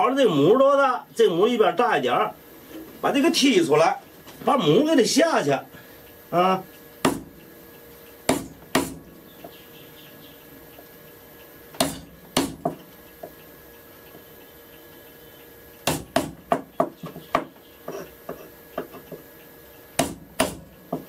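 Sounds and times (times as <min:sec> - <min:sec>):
wood chisel being struck: 0:07.0 - 0:07.3, 0:08.3 - 0:09.0, 0:11.8 - 0:13.4, 0:15.8 - 0:17.5, 0:20.0 - 0:21.0.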